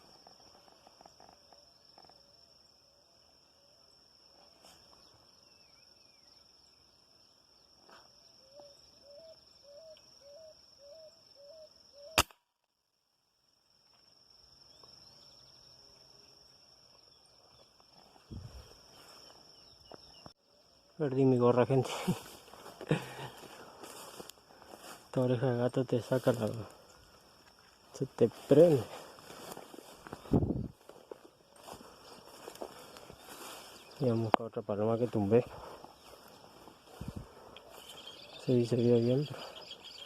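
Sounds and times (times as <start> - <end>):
air rifle shot: 12.2 - 12.4.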